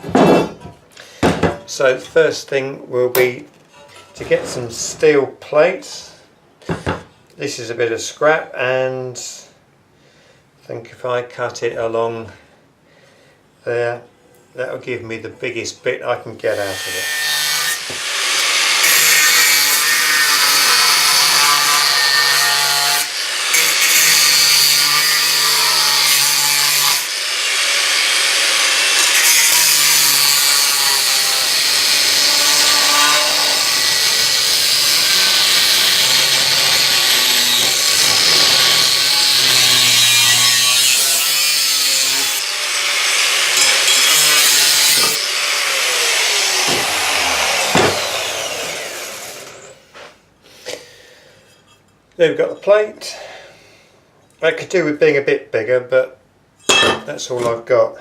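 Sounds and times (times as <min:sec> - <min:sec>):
power tool cutting steel plate: 0:16.7 - 0:49.8.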